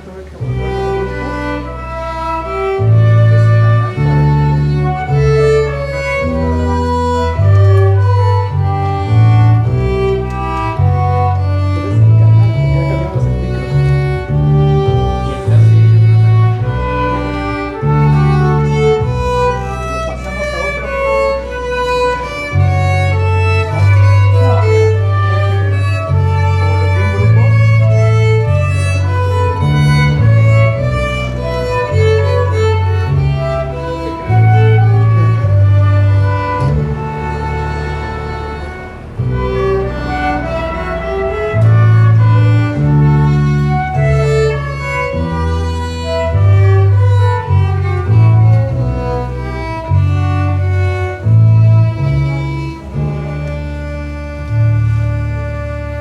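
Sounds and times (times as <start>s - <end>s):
bowed bass line: 0.0s - 56.0s
violin melody: 0.0s - 56.0s.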